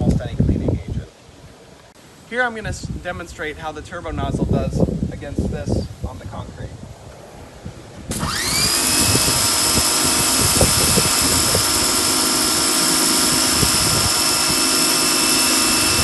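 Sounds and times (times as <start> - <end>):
nozzle spraying concrete: 8.1 - 16.0
pressure washer motor whining: 8.1 - 16.0.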